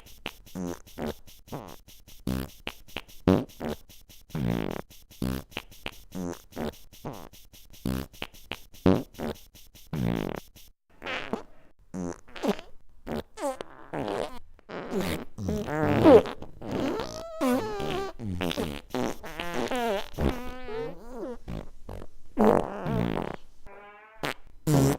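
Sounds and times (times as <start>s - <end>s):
fart sounds: 0.0s - 24.9s.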